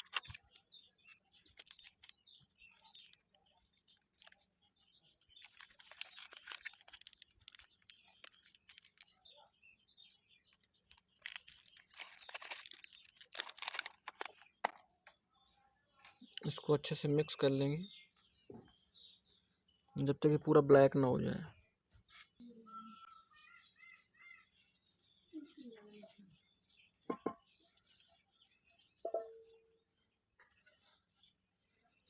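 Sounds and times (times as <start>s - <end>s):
putty pack crinkling: 0.0s - 0.6s, 1.4s - 4.4s, 5.2s - 9.3s, 10.5s - 14.8s
birds chirping: 0.0s - 32.0s.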